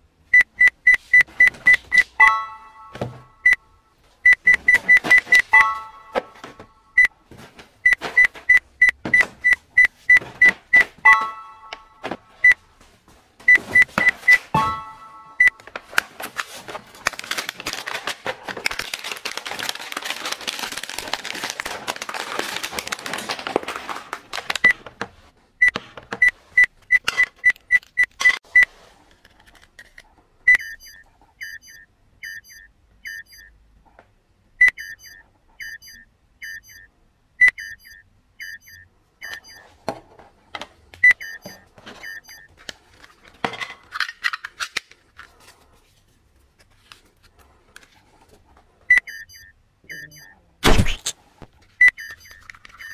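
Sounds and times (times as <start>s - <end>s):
plastic rustling and crinkling: 15.6s - 25.3s
toy gun electronic beeping: 30.5s - 33.5s, 34.6s - 36.8s, 37.4s - 39.6s, 49.1s - 50.3s.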